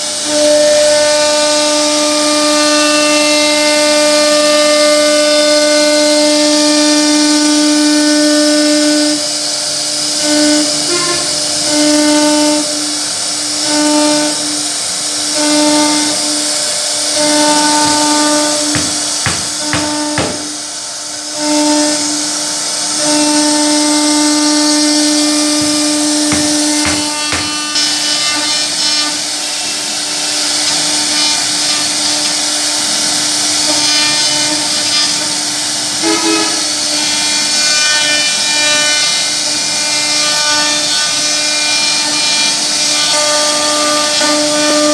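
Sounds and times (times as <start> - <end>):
router spindle whining: 12.6 - 20.9, 21.9 - 29.4.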